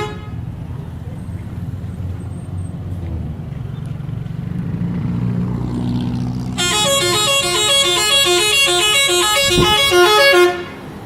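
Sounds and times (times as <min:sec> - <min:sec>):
multi-tone bus horn tune: 0:00.0 - 0:00.5, 0:06.6 - 0:11.0
bus engine running: 0:00.0 - 0:11.0.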